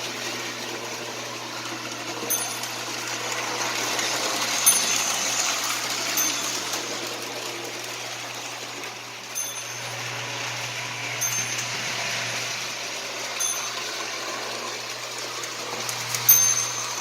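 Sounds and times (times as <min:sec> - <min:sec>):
toy train motor and wheel rumble: 0:00.0 - 0:17.0
toy train bell dinging: 0:02.2 - 0:07.2, 0:09.3 - 0:12.6, 0:13.2 - 0:15.0, 0:15.8 - 0:17.0.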